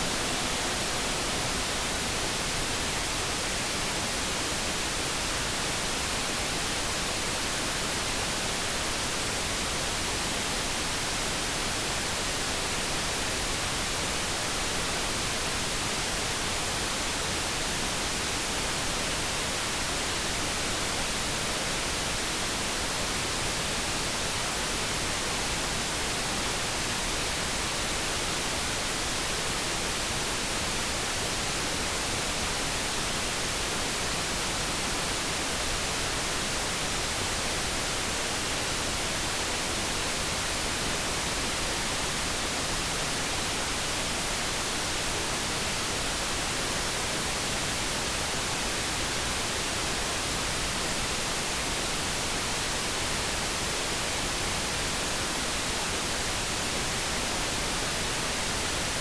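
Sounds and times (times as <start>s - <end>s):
steady hiss: 0.0s - 9.1s.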